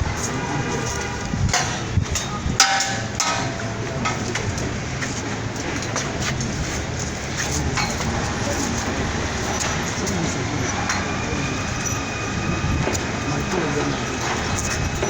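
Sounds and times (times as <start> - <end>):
steady low rumble: 0.0 - 15.0
sharp metallic knocks: 0.9 - 6.3.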